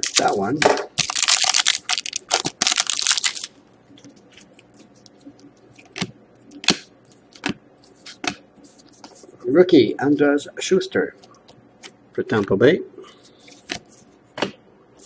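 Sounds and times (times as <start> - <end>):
foil wrapper tearing: 0.0 - 0.4, 1.0 - 3.5.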